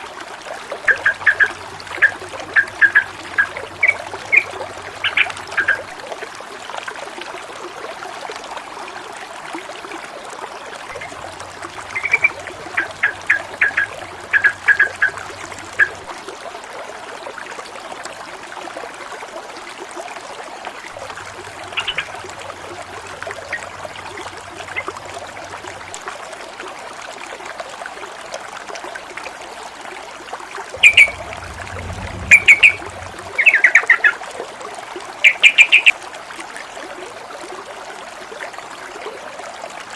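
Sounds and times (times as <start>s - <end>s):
stream water running and splashing: 0.0s - 39.9s
birds chirping: 11.8s - 16.0s, 30.8s - 33.8s.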